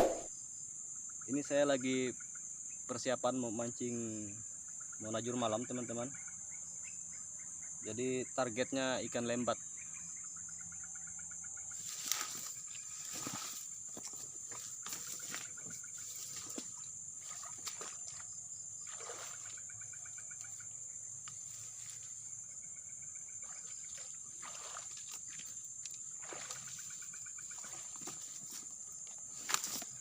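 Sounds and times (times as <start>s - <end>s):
rapid pulsed chirping: 0.0s - 0.3s
high-pitched insect drone: 1.0s - 30.0s.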